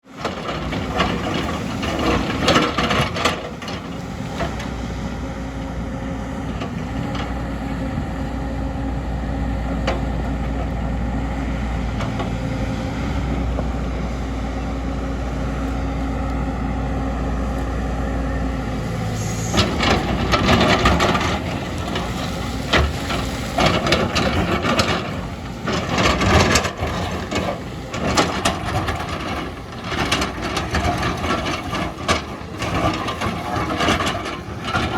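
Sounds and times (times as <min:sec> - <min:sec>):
excavator diesel engine running: 0:00.1 - 0:34.9
bucket knocking and scraping: 0:19.4 - 0:34.9.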